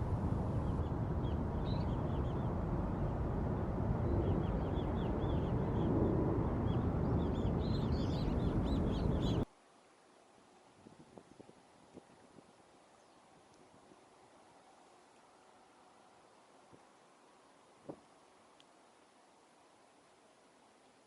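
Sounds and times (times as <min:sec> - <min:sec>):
birds chirping: 0:00.0 - 0:03.3, 0:03.9 - 0:09.5
steady rushing noise: 0:00.0 - 0:09.5.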